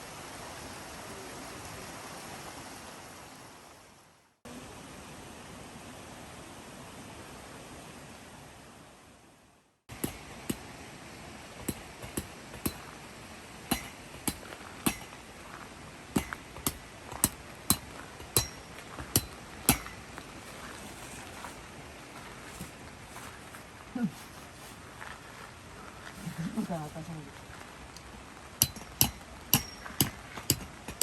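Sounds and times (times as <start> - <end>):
hammer striking metal pegs: 9.9 - 10.7, 11.6 - 12.9, 13.7 - 15.3, 16.2 - 20.3, 28.6 - 31.0.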